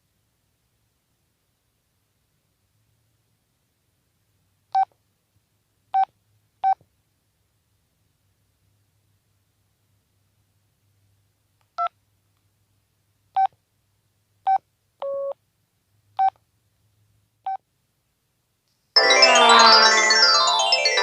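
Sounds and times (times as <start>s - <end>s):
phone keypad beeps: 14.5s - 15.4s.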